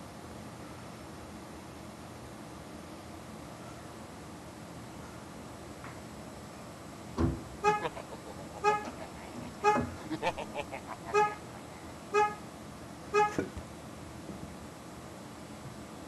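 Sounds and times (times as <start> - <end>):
thump: 7.2 - 7.5
car alarm horn honks: 7.6 - 7.9, 8.6 - 9.0, 9.6 - 10.0, 11.1 - 11.4, 12.1 - 12.4, 13.1 - 13.5.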